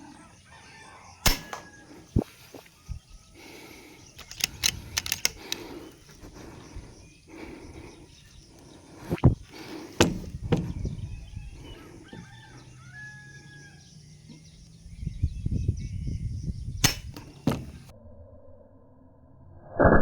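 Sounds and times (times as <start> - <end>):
faint bird calls: 0.0 - 17.9
sharp gunshots: 1.2 - 1.7, 16.8 - 17.9.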